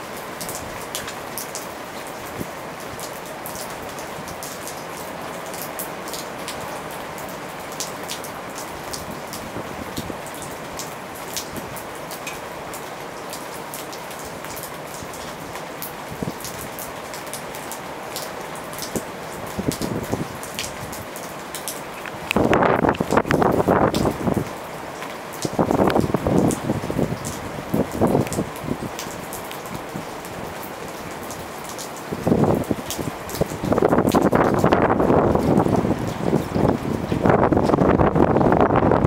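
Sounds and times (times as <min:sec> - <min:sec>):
heavy rain falling: 0:00.0 - 0:39.0
raindrops ticking: 0:10.0 - 0:30.1.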